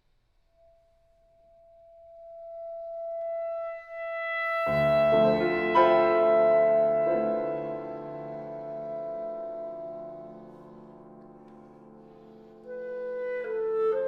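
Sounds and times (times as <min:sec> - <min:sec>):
clarinet holding a long note: 0:01.3 - 0:14.0
piano chords: 0:03.2 - 0:14.0.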